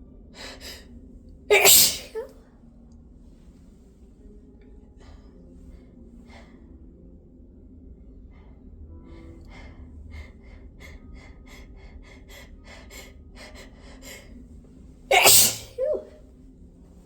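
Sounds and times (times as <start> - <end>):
person sneezing: 1.5 - 2.3, 15.1 - 16.1.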